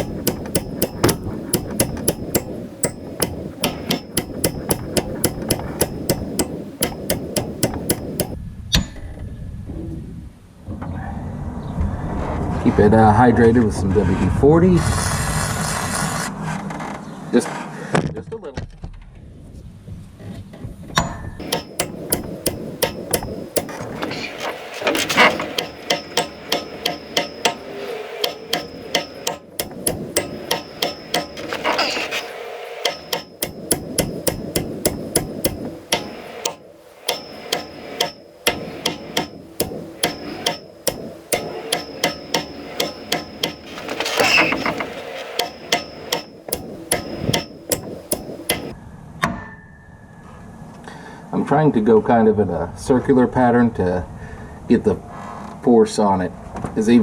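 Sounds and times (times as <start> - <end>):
hammer striking metal: 0.0 - 9.0, 21.0 - 48.8
metallic ring: 0.0 - 9.0, 21.0 - 48.8.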